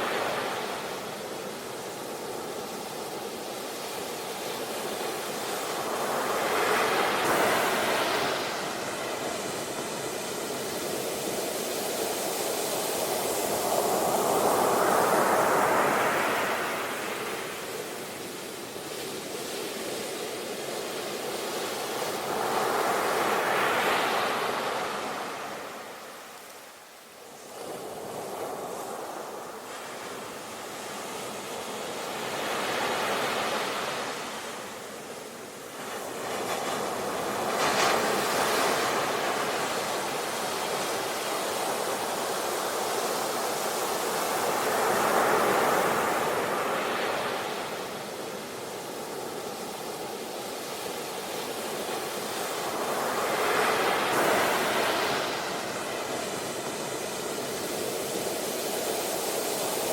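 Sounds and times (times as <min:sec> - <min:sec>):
sea waves surf: 0:00.0 - 0:59.9.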